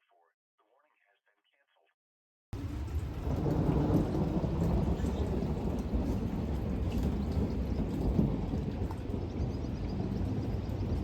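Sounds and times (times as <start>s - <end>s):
rain falling: 2.6s - 11.0s
thunder rumbling: 2.6s - 11.0s.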